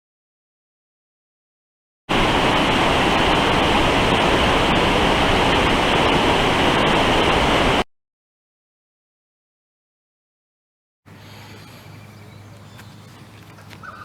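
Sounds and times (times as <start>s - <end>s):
rushing river water: 2.1s - 7.8s.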